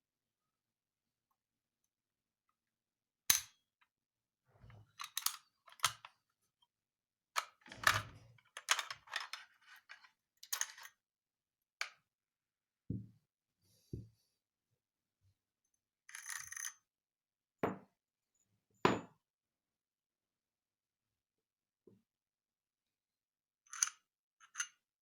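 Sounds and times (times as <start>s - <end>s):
pistol parts clicking and clacking: 5.0s - 6.1s, 7.4s - 10.9s, 23.7s - 24.8s.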